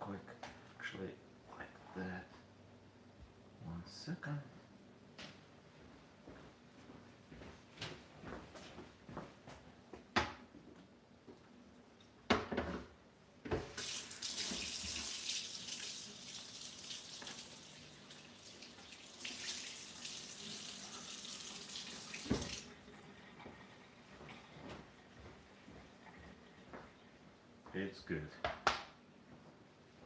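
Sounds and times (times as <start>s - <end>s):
kitchen tap running into sink: 13.6s - 24.4s.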